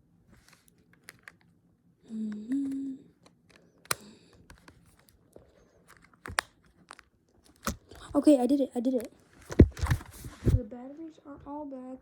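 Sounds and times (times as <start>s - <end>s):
person humming: 2.1s - 3.2s.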